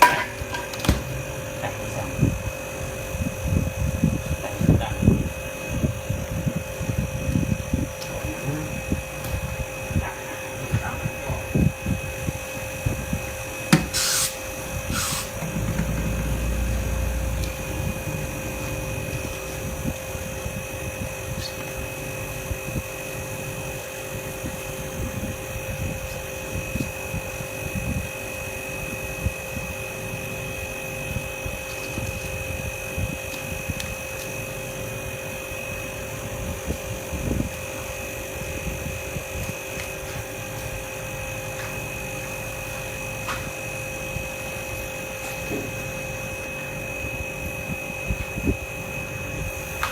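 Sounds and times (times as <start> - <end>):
small motor humming: 13.7 - 23.1
brief low rumble: 15.4 - 19.9.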